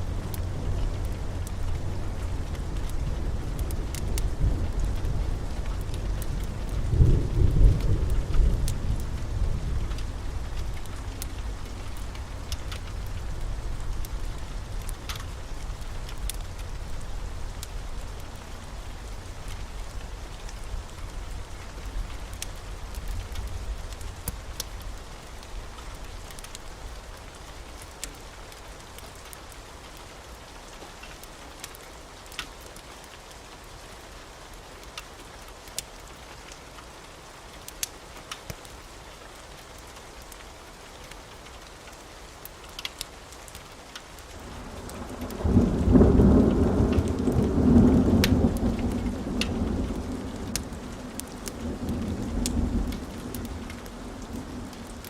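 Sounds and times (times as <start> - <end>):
thunder rumbling: 0.0 - 18.2, 44.4 - 55.0
steady rain: 0.0 - 55.0.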